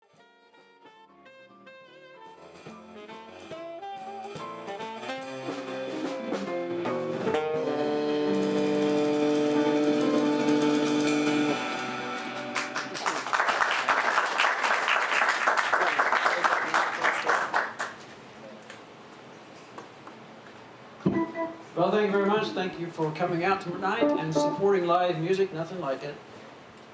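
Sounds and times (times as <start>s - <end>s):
jazz band with saxophone: 0.0s - 14.0s, 21.1s - 21.8s, 23.9s - 25.0s
audience applause: 10.1s - 18.0s.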